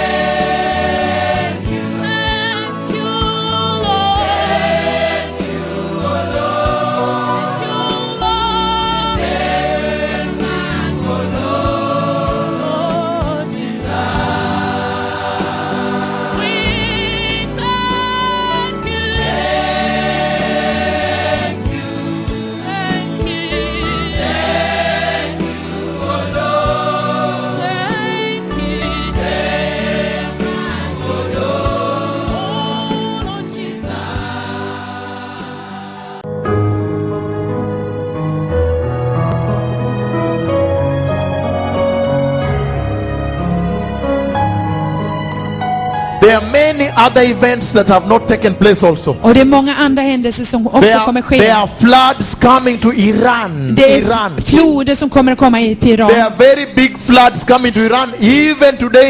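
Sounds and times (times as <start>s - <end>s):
gospel choir singing: 0.0s - 36.3s, 39.6s - 49.7s.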